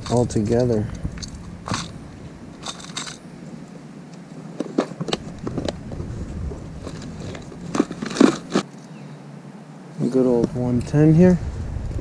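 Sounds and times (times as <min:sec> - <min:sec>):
wind rumble on microphone: 0:00.0 - 0:02.7, 0:05.1 - 0:08.6, 0:10.3 - 0:12.0.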